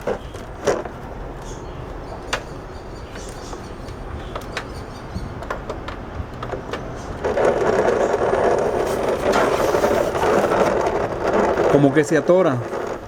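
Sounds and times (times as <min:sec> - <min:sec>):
harsh rattling of fan motor: 0:06.2 - 0:13.0.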